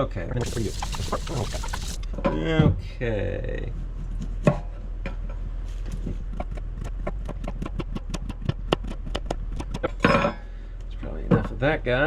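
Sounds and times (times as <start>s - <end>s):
steady low hum: 0.0s - 2.4s.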